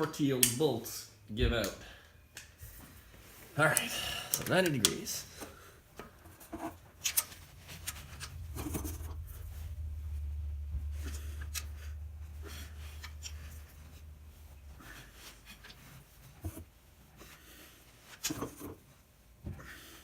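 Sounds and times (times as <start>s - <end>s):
low hum: 5.5s - 16.8s.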